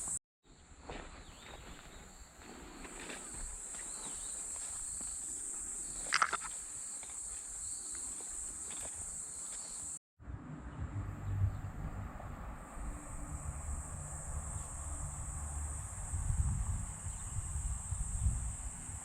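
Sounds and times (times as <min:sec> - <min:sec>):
high-pitched insect chorus: 0:02.9 - 0:10.0, 0:12.8 - 0:19.0.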